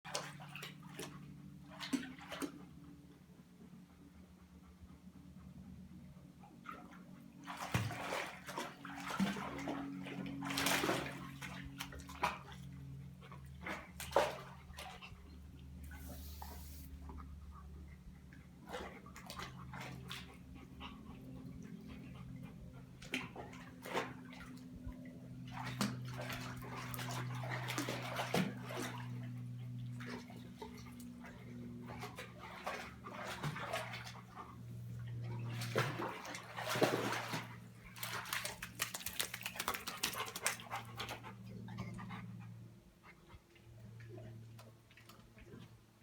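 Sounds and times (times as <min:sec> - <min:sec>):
water sloshing and splashing: 0:00.1 - 0:02.6, 0:07.4 - 0:15.3, 0:18.6 - 0:21.0, 0:21.6 - 0:42.1
steady low hum: 0:09.5 - 0:33.2.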